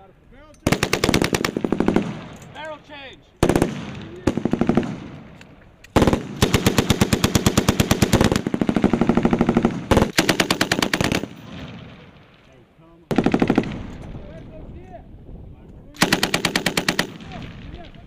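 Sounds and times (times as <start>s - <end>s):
machine gun firing bursts: 0.6s - 2.4s, 3.4s - 5.2s, 6.0s - 11.5s, 13.1s - 14.0s, 16.0s - 17.7s.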